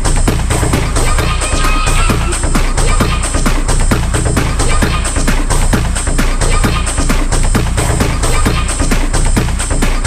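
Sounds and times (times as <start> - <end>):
fast techno music: 0.0 - 10.0
pounding kick drum: 0.0 - 10.0.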